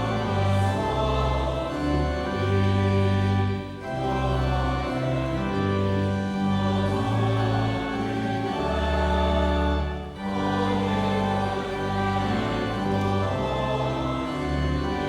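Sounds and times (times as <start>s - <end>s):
choir singing a hymn: 0.0s - 15.0s
organ chords: 0.0s - 15.0s.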